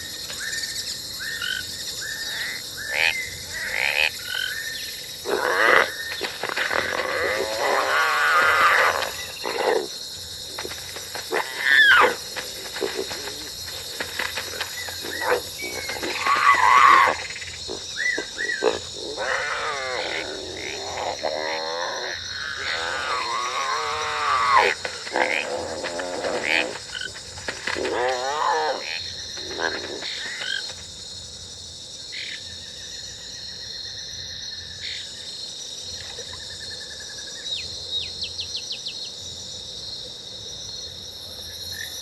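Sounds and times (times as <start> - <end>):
high insect drone: 0.0 - 42.0
warbling animal cries: 6.6 - 9.9, 11.3 - 13.5, 14.5 - 26.8.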